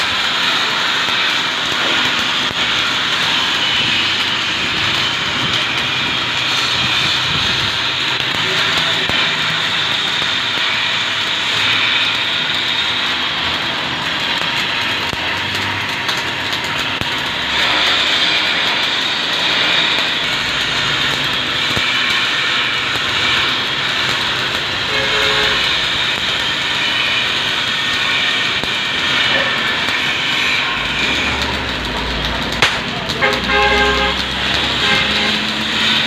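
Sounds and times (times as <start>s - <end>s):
arc welding hiss and crackle: 0.0s - 36.0s.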